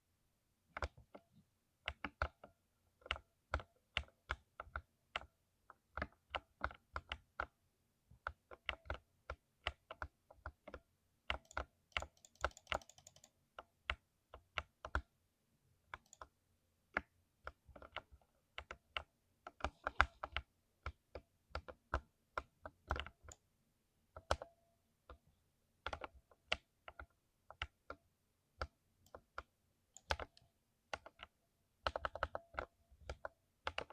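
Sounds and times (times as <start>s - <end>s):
mechanical keyboard typing: 9.7s - 15.0s, 30.0s - 33.9s.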